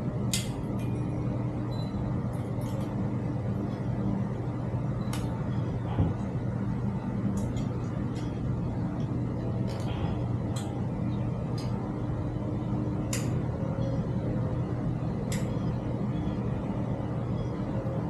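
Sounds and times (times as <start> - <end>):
low mechanical hum: 0.0 - 18.0
clicks and taps of metal parts: 0.3 - 1.0, 13.1 - 13.4.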